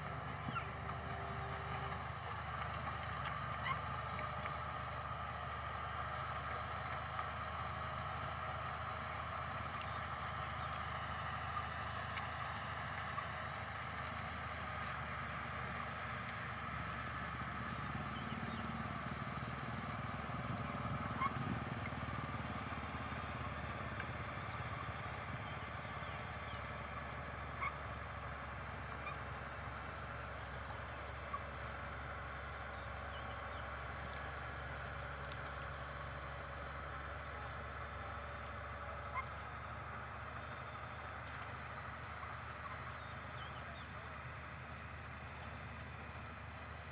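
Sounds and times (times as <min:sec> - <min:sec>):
faint clicks: 0:41.0 - 0:43.0.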